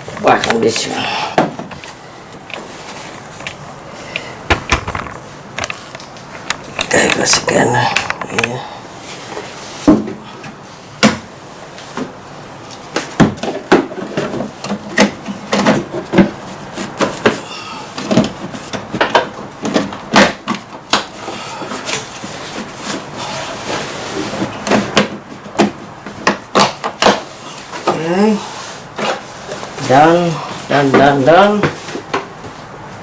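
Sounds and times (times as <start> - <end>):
hard objects clicking and knocking: 4.2 - 8.6, 13.0 - 23.1, 24.4 - 28.0.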